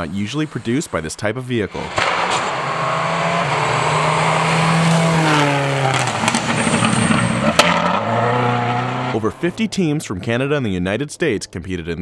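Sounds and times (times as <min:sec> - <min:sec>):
rally car passing at speed: 0:01.8 - 0:09.6.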